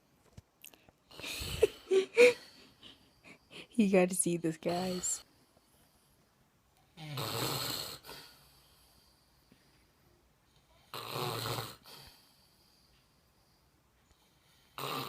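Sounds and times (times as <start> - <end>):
man snoring: 7.0 - 8.3, 10.9 - 12.1, 14.7 - 15.0.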